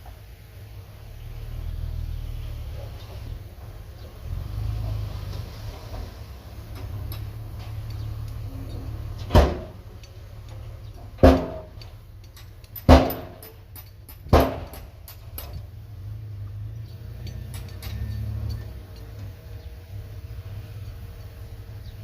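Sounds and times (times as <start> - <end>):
diesel machinery running: 0.0 - 22.0
loud ringing bangs: 11.1 - 11.8, 12.7 - 15.7.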